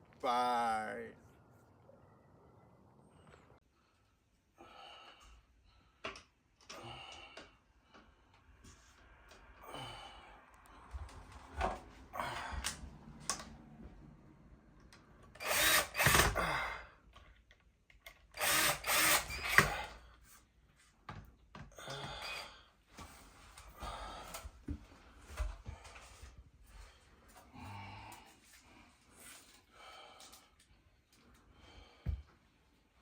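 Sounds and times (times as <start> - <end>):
power drill running: 15.3 - 16.4, 18.3 - 20.0.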